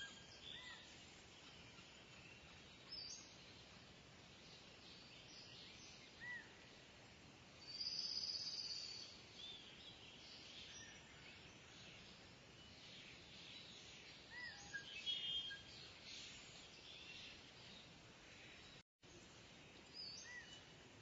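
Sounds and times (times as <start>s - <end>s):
bird chirps: 0.0s - 3.6s, 7.7s - 18.8s
faint outdoor ambience: 0.0s - 21.0s.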